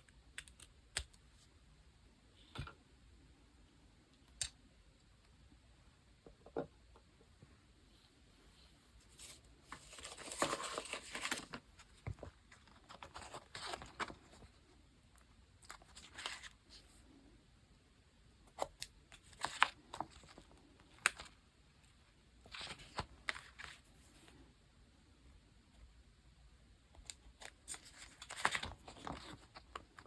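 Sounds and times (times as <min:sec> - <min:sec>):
paper rustling and scraping: 0:09.1 - 0:14.4.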